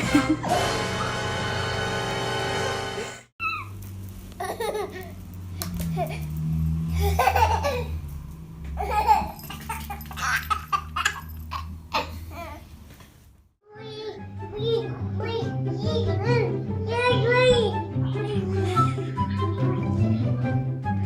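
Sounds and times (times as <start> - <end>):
baby laughing: 4.4 - 5.1, 7.0 - 8.0, 8.8 - 12.7.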